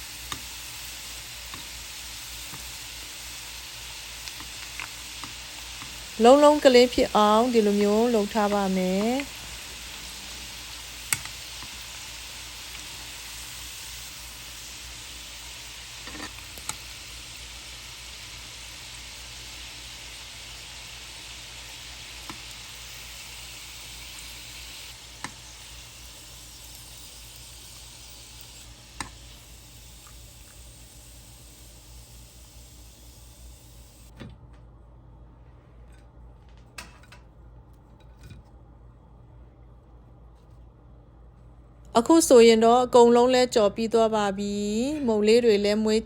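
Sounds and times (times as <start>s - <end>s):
dough sizzling in hot oil: 0.0s - 34.1s.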